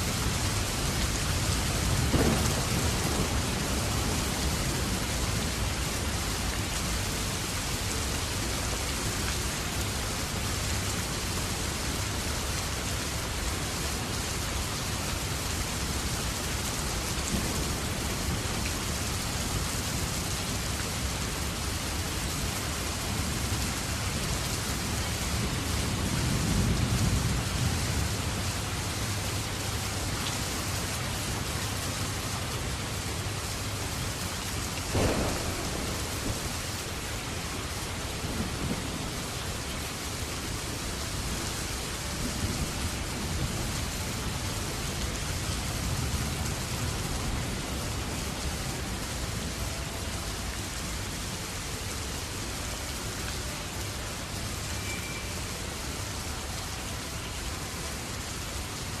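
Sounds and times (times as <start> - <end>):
heavy rain falling: 0.0 - 59.0
thunder rumbling: 0.2 - 5.6, 34.9 - 41.4.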